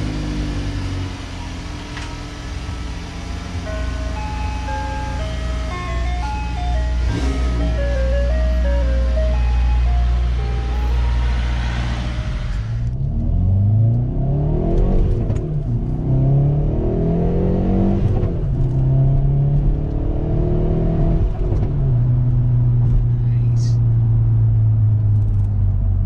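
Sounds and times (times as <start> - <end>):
car engine revving and idling: 0.0 - 26.0
background music: 1.4 - 12.8.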